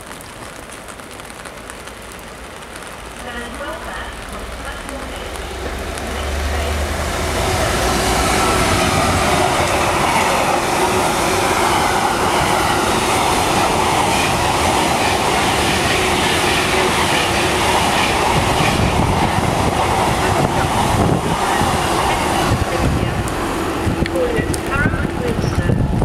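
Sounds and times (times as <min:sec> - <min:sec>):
train passing: 0:02.7 - 0:26.0.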